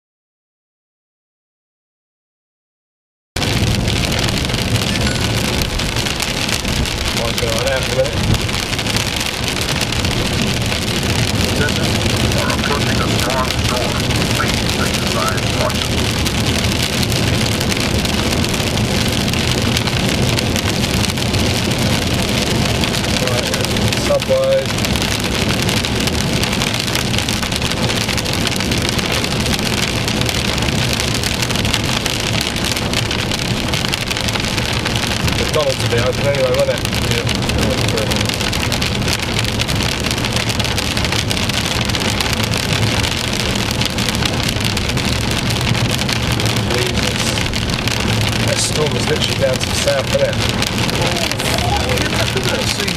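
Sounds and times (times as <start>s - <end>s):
heavy rain falling: 3.4s - 52.9s
low rumble: 3.4s - 52.9s.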